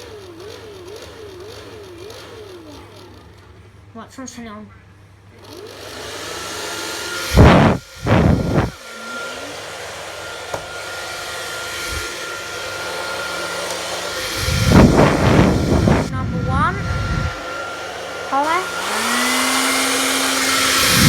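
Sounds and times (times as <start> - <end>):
hair dryer motor whine: 5.5 - 21.0
hair dryer blowing air: 5.6 - 21.0
loud gusty air blasts: 7.1 - 9.0, 9.6 - 21.0.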